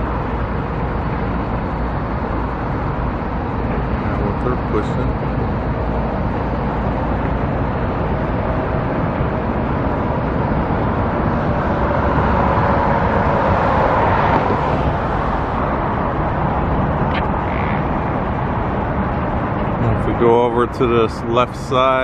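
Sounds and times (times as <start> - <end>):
outdoor traffic noise: 0.0 - 22.0
vehicle passing: 10.4 - 21.1.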